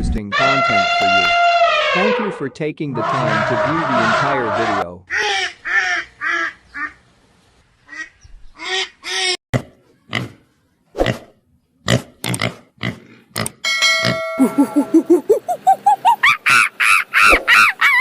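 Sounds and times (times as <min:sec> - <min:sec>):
steady many-toned animal call: 0:00.3 - 0:07.0, 0:14.4 - 0:18.0.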